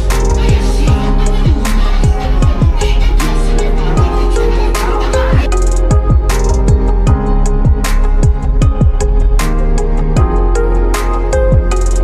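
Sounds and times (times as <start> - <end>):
deep kick drums: 0.0 - 3.4, 5.2 - 10.5, 11.4 - 11.9
sustained chords: 0.0 - 11.7.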